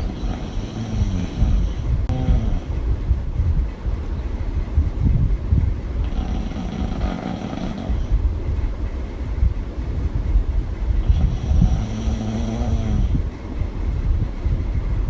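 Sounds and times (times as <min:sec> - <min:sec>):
person snoring loudly: 0:00.0 - 0:02.8, 0:06.0 - 0:08.2, 0:11.0 - 0:13.2.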